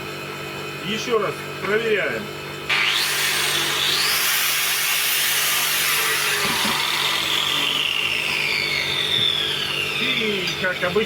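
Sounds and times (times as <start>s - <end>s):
angle grinder motor whining: 2.7s - 11.0s.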